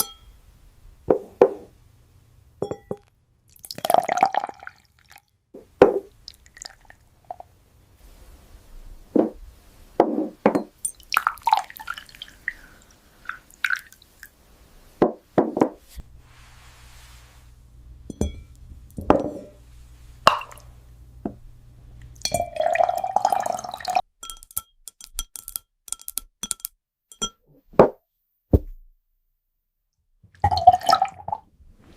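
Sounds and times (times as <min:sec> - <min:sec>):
bottles tapping and clinking: 0:02.6 - 0:03.1, 0:10.0 - 0:11.0, 0:18.1 - 0:19.6, 0:20.3 - 0:20.6, 0:24.2 - 0:27.4
water plopping and dripping: 0:10.8 - 0:14.3, 0:20.3 - 0:20.7.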